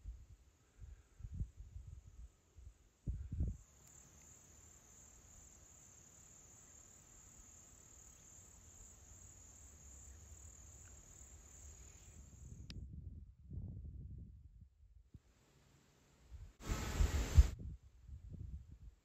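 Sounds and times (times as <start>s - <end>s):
insects trilling: 3.5s - 12.6s.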